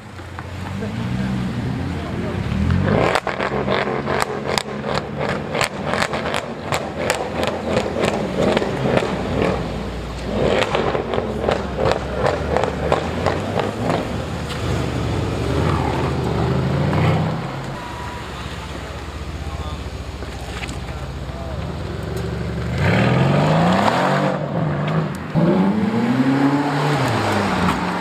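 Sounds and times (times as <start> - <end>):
exhaust pops and crackles: 2.0 - 17.8, 18.7 - 24.1.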